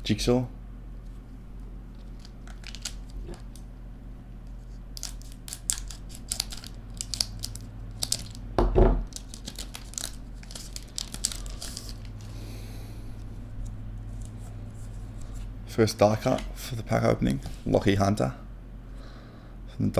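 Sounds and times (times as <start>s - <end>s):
steady low hum: 0.0s - 19.9s
foil wrapper crinkling: 1.9s - 3.7s, 4.9s - 8.4s, 9.0s - 12.4s.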